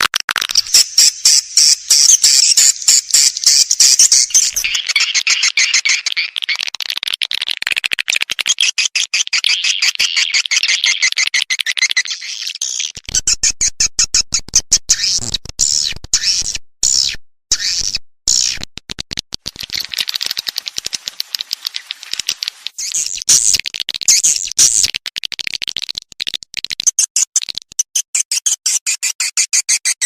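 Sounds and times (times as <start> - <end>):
rapid high-pitched bird twittering: 0.5 - 6.7, 8.5 - 13.4, 19.6 - 24.6.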